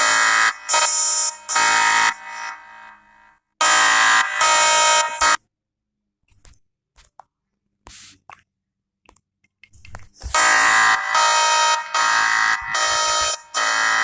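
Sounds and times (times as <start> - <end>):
harsh buzzing alarm tone: 0.0 - 5.4, 10.3 - 14.0.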